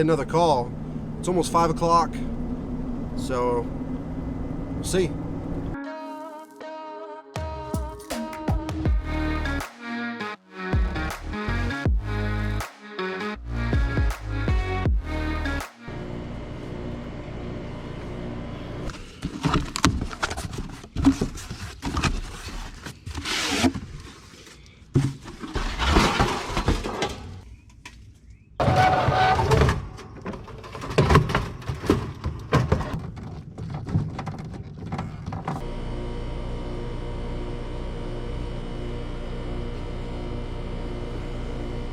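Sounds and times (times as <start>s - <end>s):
background music: 5.8s - 16.0s
tool knocks and clatter: 28.6s - 35.6s.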